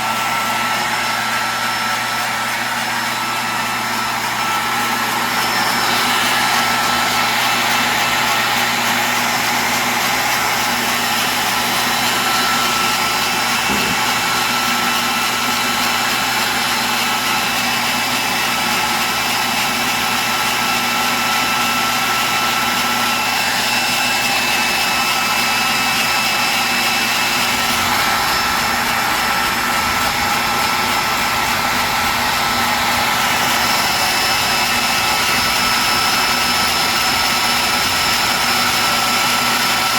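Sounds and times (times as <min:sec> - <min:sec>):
grinder motor whine: 0:00.0 - 0:39.9
grinding wheel hissing on metal: 0:00.0 - 0:39.9.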